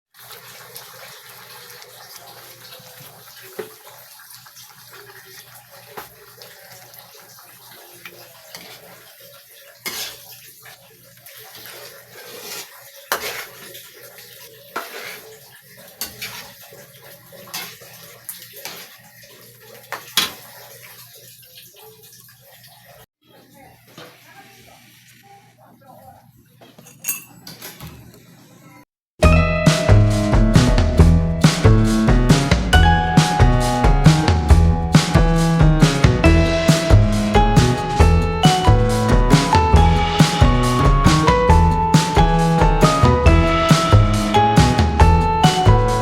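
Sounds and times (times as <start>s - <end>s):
water running: 0.1s - 27.4s, 29.2s - 46.0s
dishes and utensils clattering: 11.6s - 13.8s, 14.7s - 16.7s, 26.6s - 28.1s.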